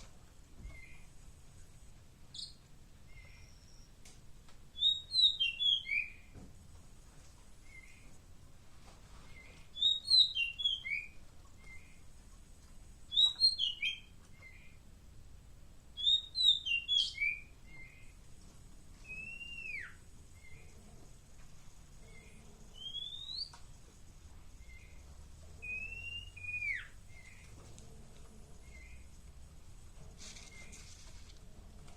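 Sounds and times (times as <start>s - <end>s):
songbird chirping and whistling: 0.6s - 1.1s, 2.3s - 4.0s, 4.7s - 6.3s, 7.6s - 8.1s, 9.2s - 12.0s, 13.1s - 14.8s, 15.9s - 18.2s, 19.0s - 20.8s, 22.0s - 23.6s, 24.6s - 27.6s, 28.6s - 29.2s.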